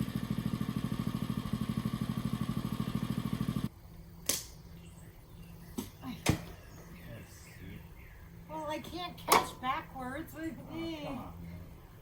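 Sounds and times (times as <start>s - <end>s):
plate compactor chugging: 0.0s - 3.7s.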